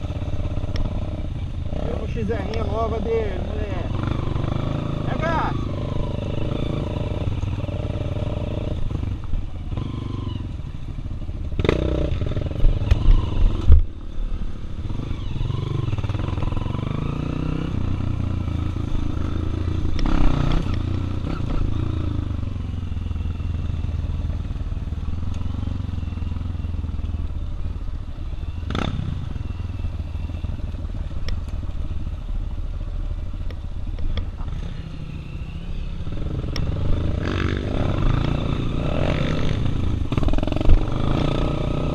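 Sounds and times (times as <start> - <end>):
dirt bike engine revving: 0.0 - 10.6, 11.4 - 13.7, 14.3 - 26.6, 28.4 - 30.5, 34.4 - 41.9.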